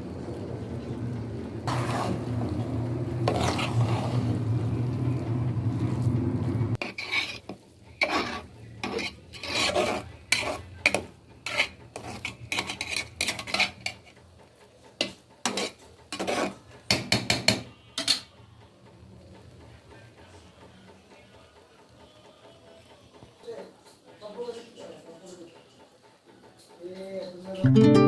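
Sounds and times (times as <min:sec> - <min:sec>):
utensil scraping in a pot: 0:01.6 - 0:04.5, 0:06.7 - 0:18.3.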